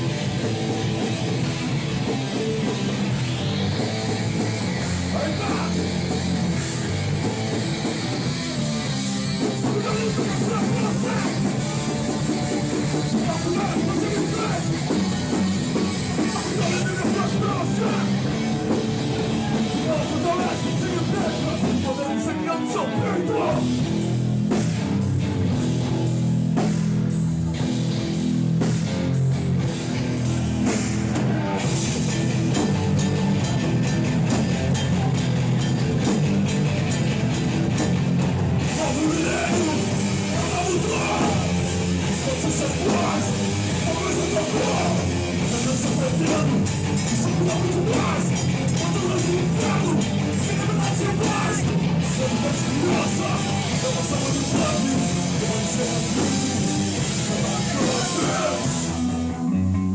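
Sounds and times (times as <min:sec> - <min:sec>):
hardcore band playing live: 0:00.0 - 0:59.9
shouted vocals: 0:09.6 - 0:11.8, 0:38.7 - 0:59.2.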